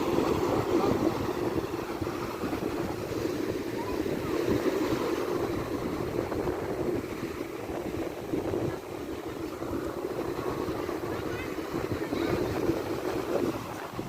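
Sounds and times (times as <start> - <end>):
sea surf washing onto shore: 0.0 - 14.0.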